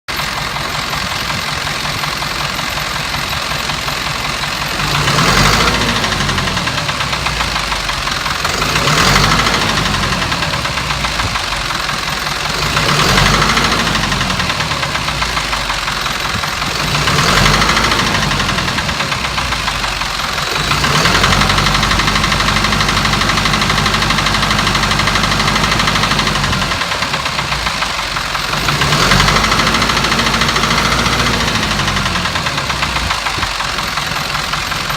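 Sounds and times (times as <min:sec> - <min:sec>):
diesel engine idling and revving: 0:00.0 - 0:34.9.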